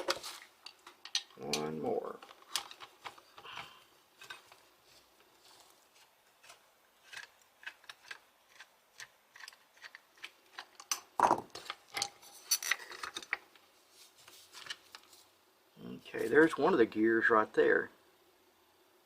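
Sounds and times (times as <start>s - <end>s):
parts clattering: 0.0s - 5.2s, 9.3s - 13.6s.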